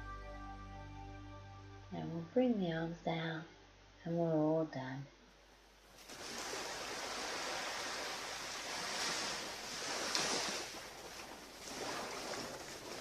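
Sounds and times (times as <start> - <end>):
waves breaking on a beach: 6.0 - 13.0.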